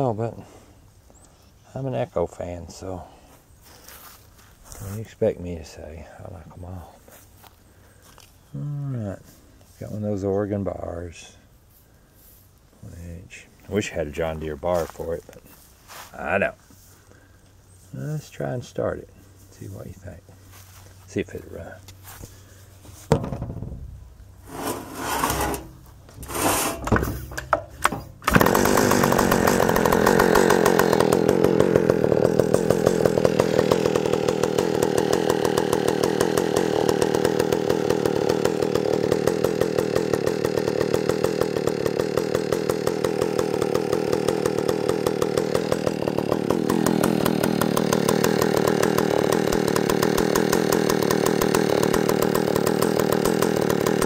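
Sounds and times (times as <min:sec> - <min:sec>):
chainsaw engine idling: 0:24.4 - 0:54.0
chainsaw starter rope pulls: 0:24.4 - 0:54.0.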